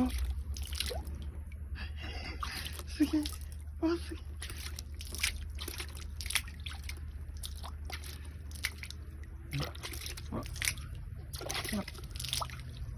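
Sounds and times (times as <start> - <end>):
seawater sloshing and dripping: 0.0 - 12.9
steady low hum: 0.0 - 12.9.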